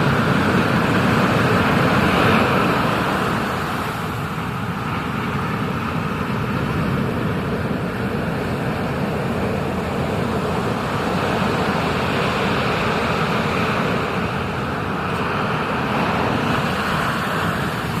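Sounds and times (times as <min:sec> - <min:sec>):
ocean surf rushing: 0:00.0 - 0:18.0.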